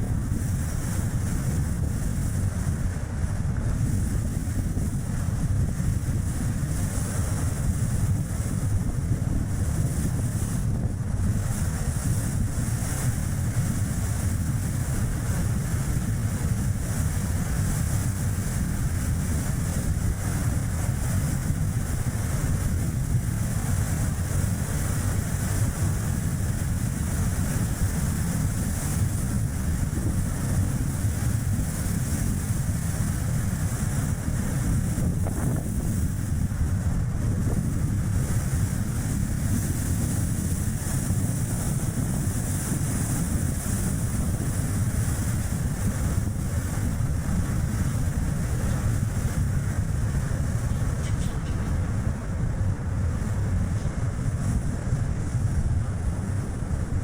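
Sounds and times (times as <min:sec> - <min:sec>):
wind buffeting microphone: 0:00.0 - 0:57.0
car road and tyre noise: 0:17.0 - 0:57.0.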